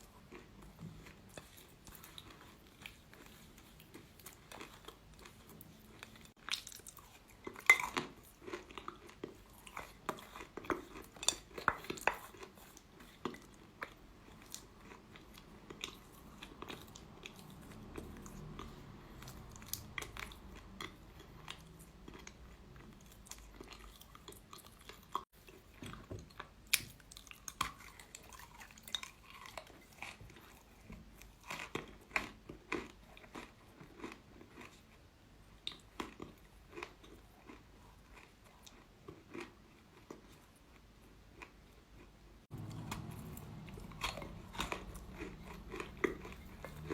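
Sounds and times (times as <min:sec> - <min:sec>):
chalk being bitten and chewed: 0:42.5 - 0:46.9.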